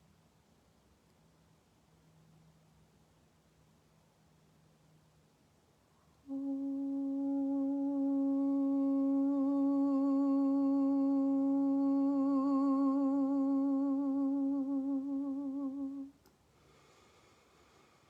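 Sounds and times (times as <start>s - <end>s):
woman singing a held note: 6.2s - 16.2s.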